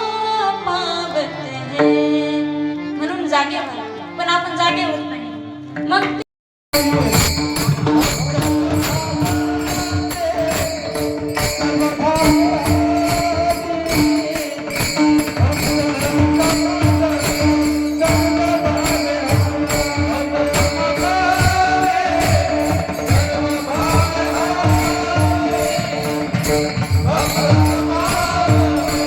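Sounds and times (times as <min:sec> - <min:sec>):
hand cymbals jingling: 0:06.8 - 0:29.0
steady drum beat: 0:06.8 - 0:29.0.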